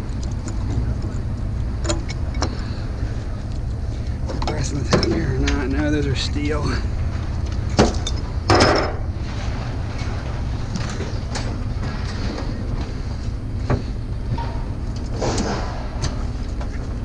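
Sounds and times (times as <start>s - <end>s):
steady low rumble: 0.0s - 17.0s
scrap metal clattering: 6.7s - 16.5s.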